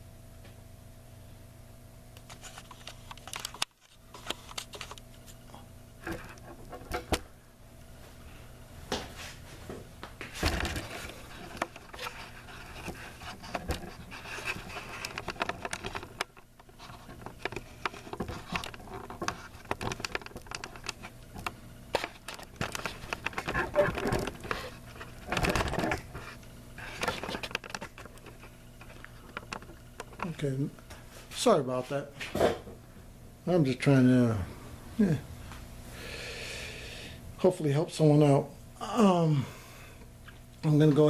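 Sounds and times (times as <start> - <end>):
low mains hum: 0.0 - 41.0
hands tapping and scraping parts: 10.2 - 30.4.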